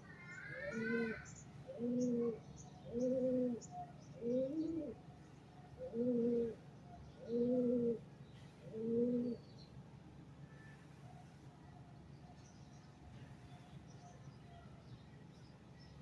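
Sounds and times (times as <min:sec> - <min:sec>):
dove cooing: 0:00.4 - 0:05.0, 0:05.8 - 0:06.6, 0:07.2 - 0:08.0, 0:08.6 - 0:09.4.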